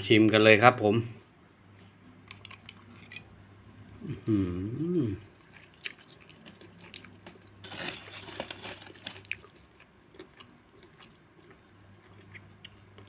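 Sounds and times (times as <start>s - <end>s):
person chewing food: 5.3s - 13.0s.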